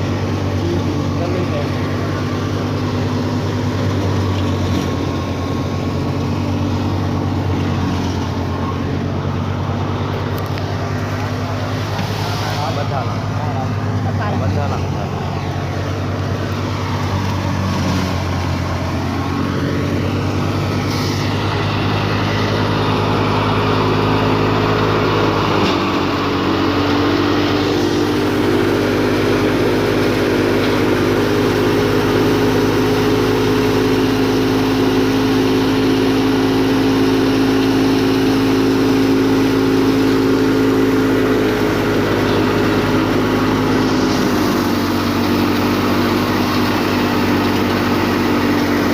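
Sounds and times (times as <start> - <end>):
tractor engine drone: 0.0 - 48.9
threshing drum clattering hiss: 11.7 - 13.3, 20.7 - 22.5.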